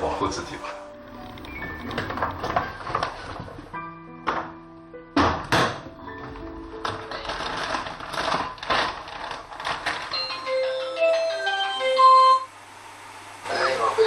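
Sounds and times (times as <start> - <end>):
tinkly bell-like melody: 10.1 - 12.4.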